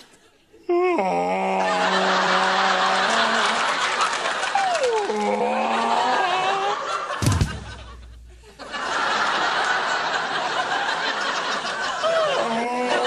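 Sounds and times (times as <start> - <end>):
studio audience laughing: 1.6 - 13.0
thud: 7.2 - 8.6.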